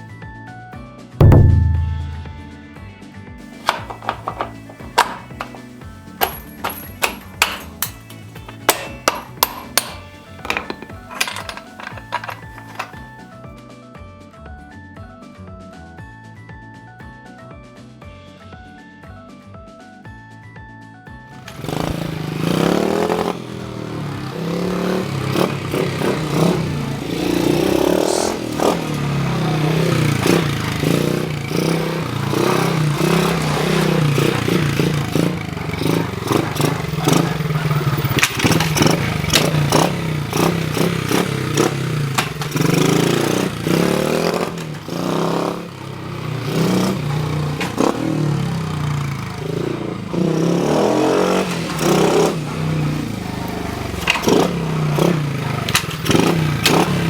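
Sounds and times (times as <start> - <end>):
metal tools clattering and scraping: 3.6 - 13.2, 24.9 - 45.6, 46.5 - 57.0.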